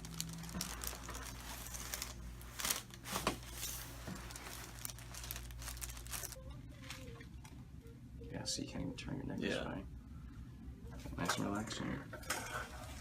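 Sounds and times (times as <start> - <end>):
rustling and crinkling on table: 0.0 - 7.3.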